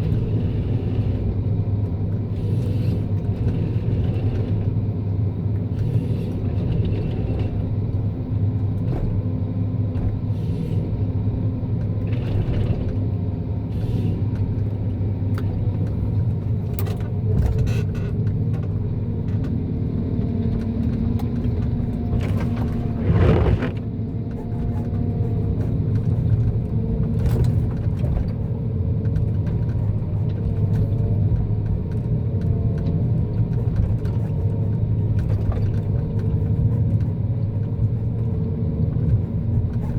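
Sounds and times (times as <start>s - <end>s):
diesel engine running under load: 0.0s - 39.9s
hydraulic whine: 22.1s - 23.9s.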